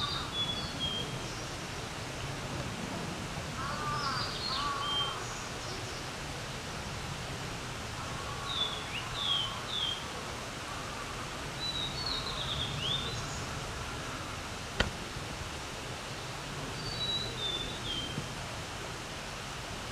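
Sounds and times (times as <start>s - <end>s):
sharp click: 14.8s - 15.0s.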